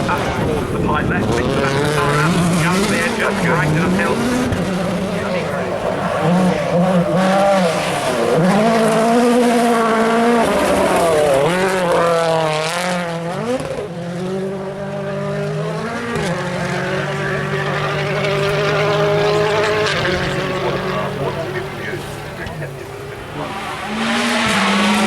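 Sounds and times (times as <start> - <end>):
rally car engine revving: 0.0 - 25.0.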